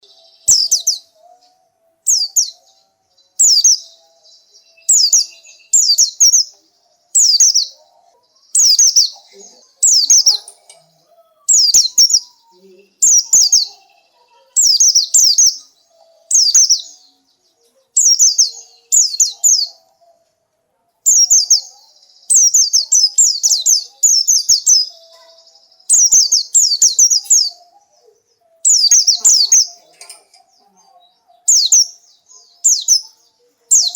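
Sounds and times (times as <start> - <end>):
bird twittering: 3.4 - 8.0, 8.6 - 17.1, 18.0 - 20.0, 21.1 - 30.5, 31.4 - 33.9.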